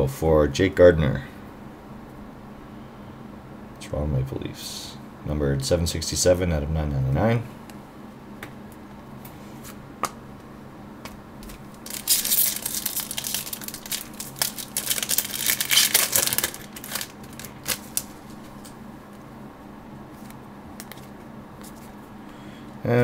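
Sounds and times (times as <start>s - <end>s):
card packaging crinkling: 11.4s - 18.8s, 20.1s - 22.0s.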